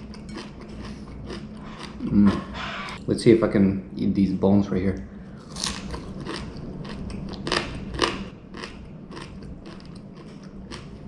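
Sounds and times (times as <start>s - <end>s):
crunching and chewing: 0.0s - 2.2s, 5.4s - 11.0s.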